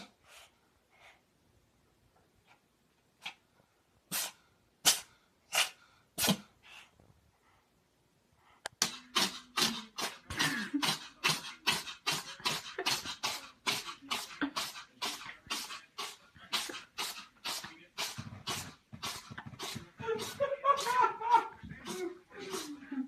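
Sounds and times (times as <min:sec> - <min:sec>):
cat sneezing: 0:04.1 - 0:06.5.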